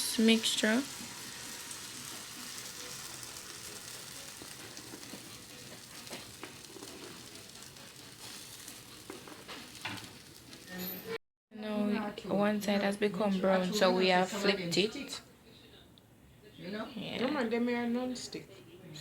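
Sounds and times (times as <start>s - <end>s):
batter sizzling in a skillet: 0.0s - 11.2s.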